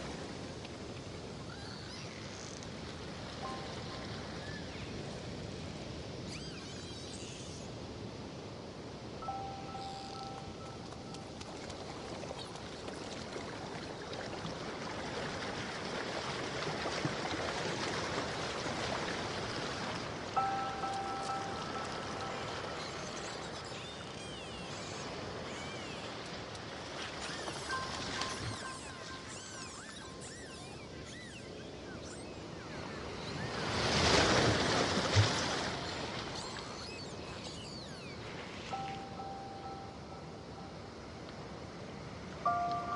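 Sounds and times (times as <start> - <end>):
faint high chirps: 6.3 - 7.7, 9.2 - 11.4, 20.4 - 26.2, 27.2 - 33.6, 35.8 - 40.9, 42.5 - 42.9
running water rushing: 10.2 - 31.2.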